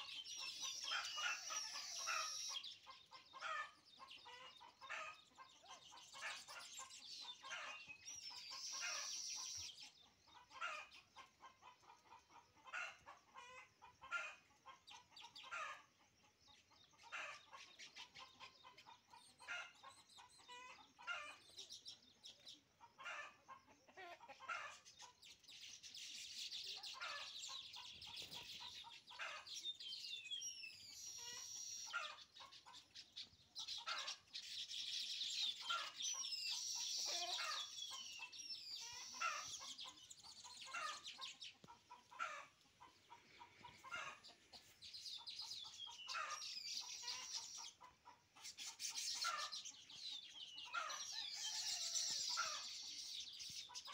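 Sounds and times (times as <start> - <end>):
wheezy bird whistles: 0.0 - 2.6, 30.8 - 32.1
weaver birds twittering chatter: 0.0 - 53.9
hens clucking: 22.4 - 24.9, 35.6 - 48.5.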